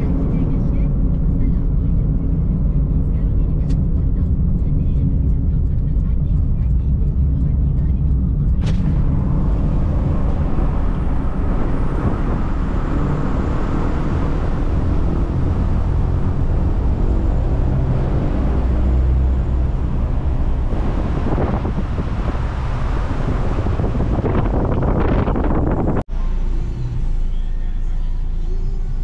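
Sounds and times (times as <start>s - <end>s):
car driving: 0.0s - 29.0s.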